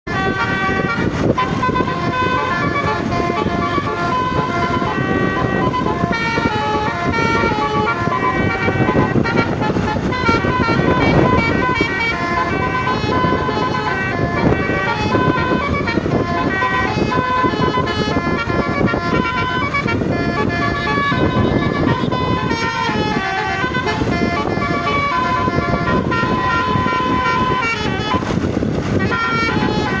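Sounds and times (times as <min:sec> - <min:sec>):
multi-tone bus horn melody: 0:00.1 - 0:30.0.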